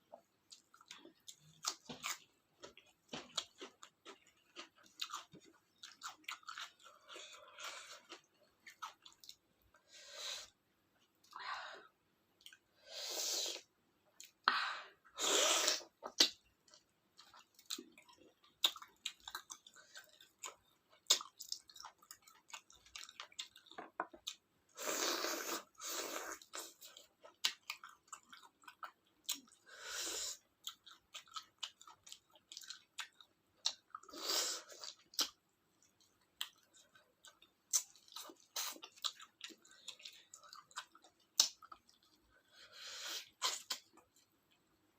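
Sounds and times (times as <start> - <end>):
person chewing food: 0.0 - 11.4, 12.4 - 12.7, 13.5 - 14.4, 15.7 - 44.9
wet mouth clicks and smacks: 41.4 - 41.8.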